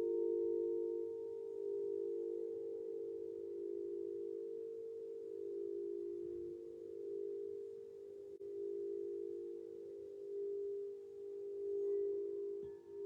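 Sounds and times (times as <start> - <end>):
crystal singing bowls humming: 0.0 - 13.0.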